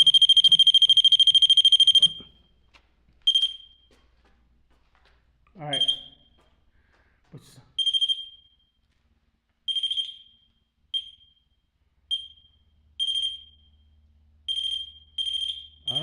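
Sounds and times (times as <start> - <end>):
high-pitched electronic beeps: 0.0 - 2.3.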